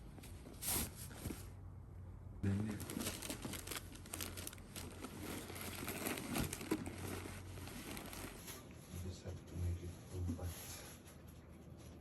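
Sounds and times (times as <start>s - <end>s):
paper packaging crinkling: 2.5s - 8.6s.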